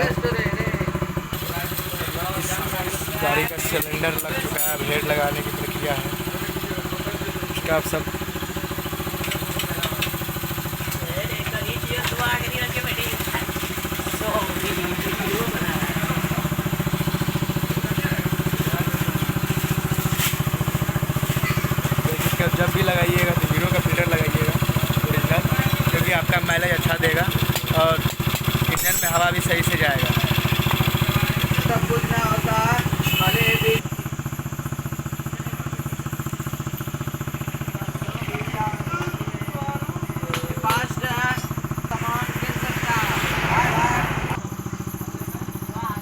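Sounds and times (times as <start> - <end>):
motorcycle engine idling: 0.0 - 46.0.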